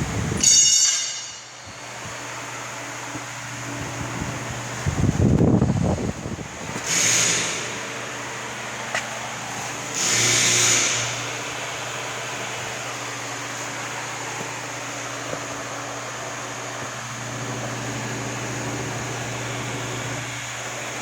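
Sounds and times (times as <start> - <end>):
ventilation fans humming: 0.0 - 21.0
welding arc hissing: 6.6 - 7.8, 9.9 - 11.3.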